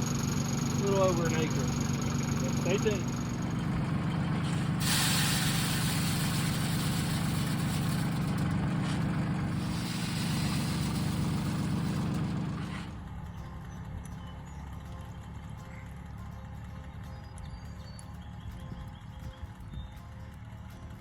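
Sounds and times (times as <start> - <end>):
tractor engine running: 0.0 - 21.0
broad hiss: 3.4 - 12.9.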